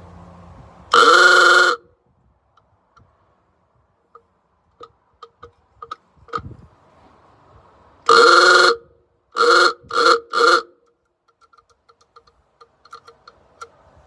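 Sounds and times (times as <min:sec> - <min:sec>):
electric horn honking: 0:00.9 - 0:01.9, 0:08.1 - 0:10.8.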